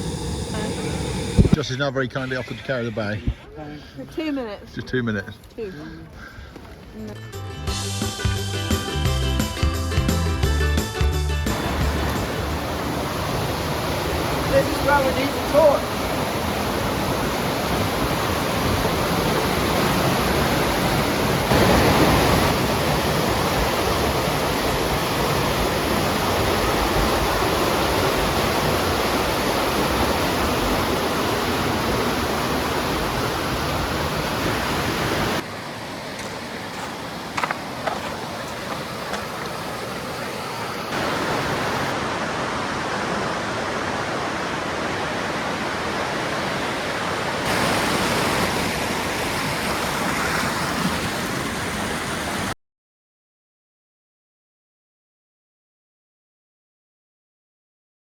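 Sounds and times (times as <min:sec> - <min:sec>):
waterfall rushing: 0:00.0 - 0:01.6, 0:11.5 - 0:52.6.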